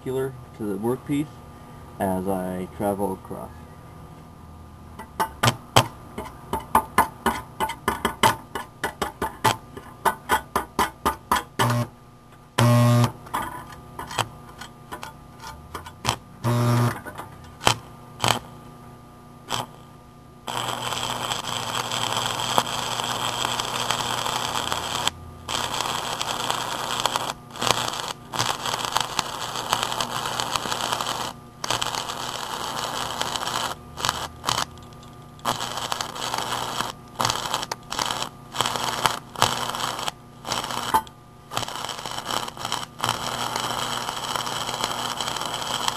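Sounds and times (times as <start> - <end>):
welding arc crackling: 12.6 - 18.6, 19.4 - 45.9
welding arc scratching sparks: 12.6 - 18.6, 19.5 - 19.9, 20.5 - 45.9
transformer hum: 19.4 - 45.9.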